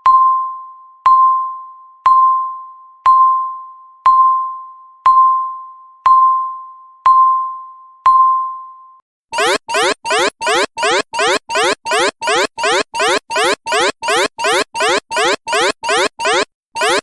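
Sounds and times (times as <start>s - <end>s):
alarm of rising sweeps: 9.4s - 17.0s
countdown timer beeps: 9.4s - 17.0s.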